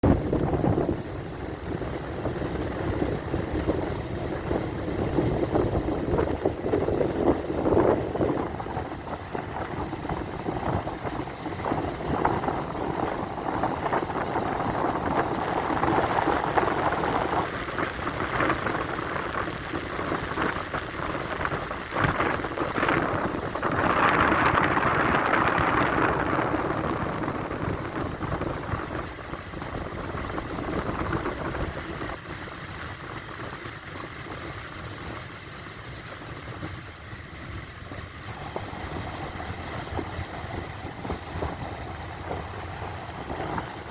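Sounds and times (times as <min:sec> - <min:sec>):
sea water rushing: 0:00.0 - 0:43.9
wind: 0:00.0 - 0:43.9.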